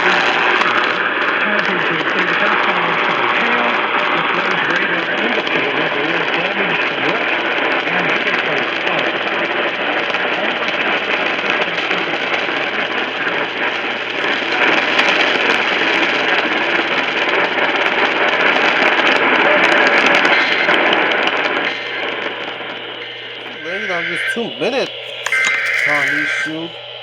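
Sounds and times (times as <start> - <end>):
radio static hiss: 1.3 - 9.0, 20.2 - 27.0
faint voice: 23.4 - 26.8.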